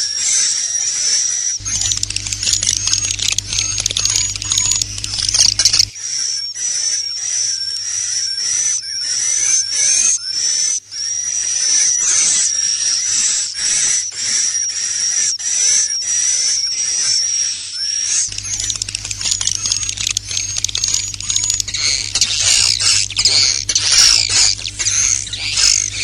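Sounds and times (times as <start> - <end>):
high rapid bird chirps: 1.6 - 5.9, 18.3 - 26.0.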